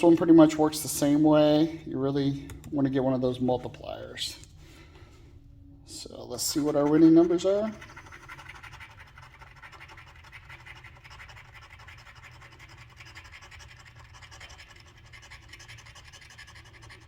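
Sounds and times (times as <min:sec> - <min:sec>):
lottery ticket being scratched: 0:06.5 - 0:17.0.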